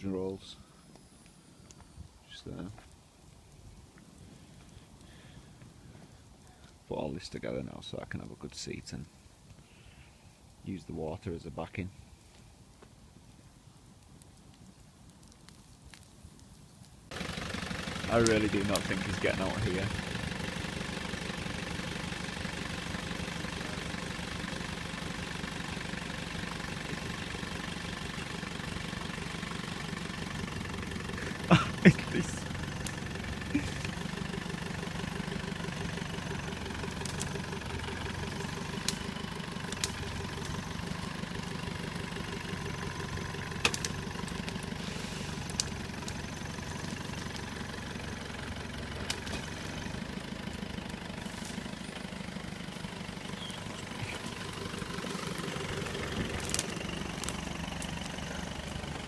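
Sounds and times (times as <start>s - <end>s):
vehicle engine idling: 4.1s - 6.8s, 17.1s - 59.0s.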